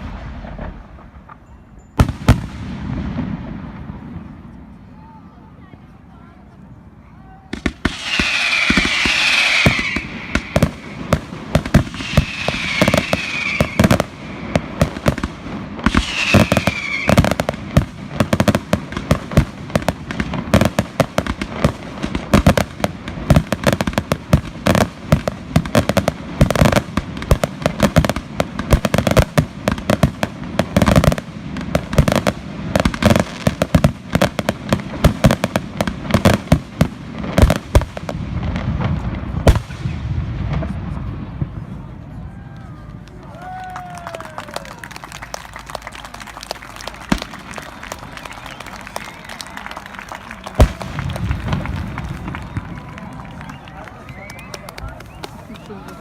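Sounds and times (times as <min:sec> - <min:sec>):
fireworks bangs and crackling: 0:00.0 - 0:06.0, 0:07.4 - 0:56.0
falling firework whistles: 0:07.6 - 0:15.2, 0:15.8 - 0:17.5, 0:47.9 - 0:49.7.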